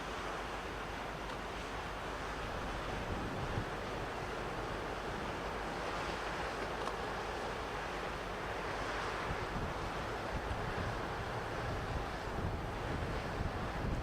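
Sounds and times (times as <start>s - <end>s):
harbour water: 0.0s - 14.0s
wind buffeting microphone: 2.5s - 5.4s, 9.2s - 14.0s.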